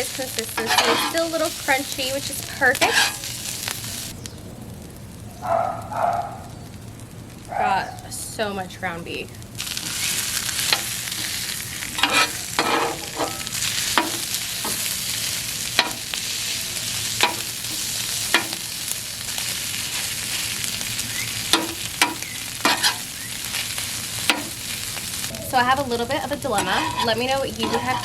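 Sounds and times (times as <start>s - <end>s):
food sizzling on a griddle: 0.0s - 28.0s
metal spatula scraping steel: 0.4s - 1.9s, 2.6s - 3.3s, 10.1s - 18.7s, 21.5s - 23.1s, 26.4s - 28.0s.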